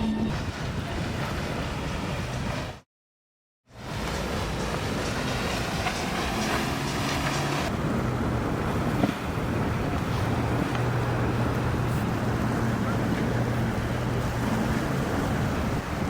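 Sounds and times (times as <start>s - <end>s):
wind: 0.0s - 2.9s, 3.7s - 16.0s
boat engines droning: 3.7s - 16.0s
rushing water: 3.7s - 16.0s.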